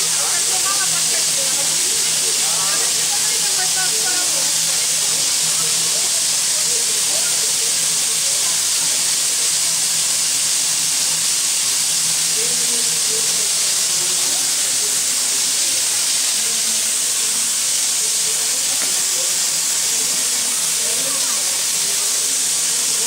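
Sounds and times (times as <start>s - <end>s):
steam locomotive venting steam: 0.0s - 23.0s.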